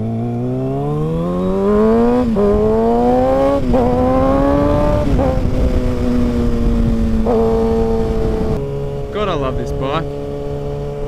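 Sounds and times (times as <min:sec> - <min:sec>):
motorcycle engine accelerating: 0:00.0 - 0:11.0.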